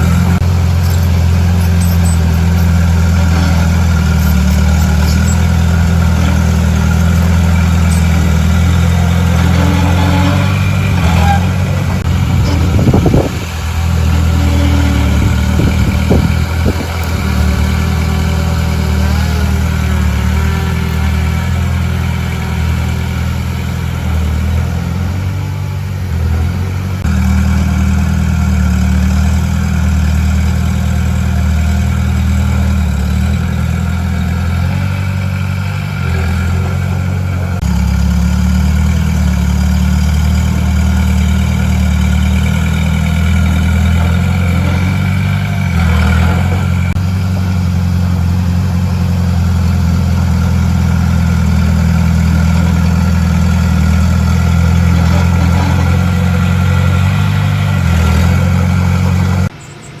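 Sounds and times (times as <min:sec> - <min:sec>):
diesel engine running: 0:00.0 - 1:00.0.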